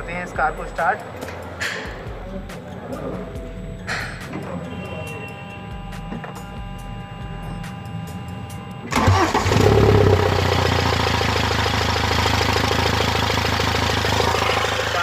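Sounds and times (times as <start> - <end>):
faint background music: 0.0 - 9.5
diesel engine starting and idling: 8.8 - 15.0.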